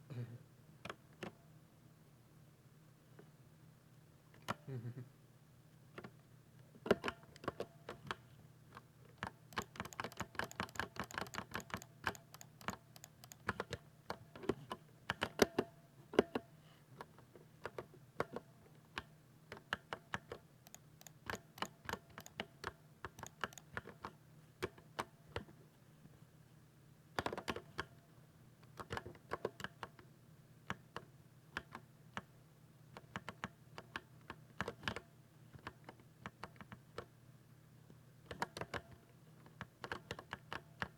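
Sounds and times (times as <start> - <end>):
faint low hum: 0.0 - 40.9
keyboard key clicks: 9.2 - 13.8, 19.8 - 24.1.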